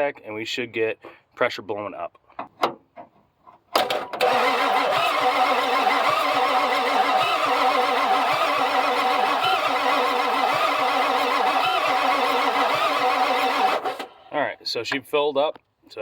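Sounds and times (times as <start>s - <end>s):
diesel engine cranking: 3.8s - 14.4s.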